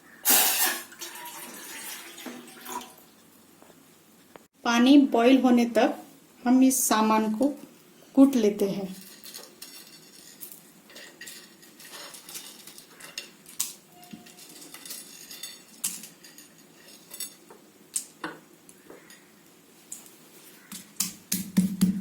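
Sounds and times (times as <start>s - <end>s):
pestle pounding in mortar: 20.7s - 22.0s.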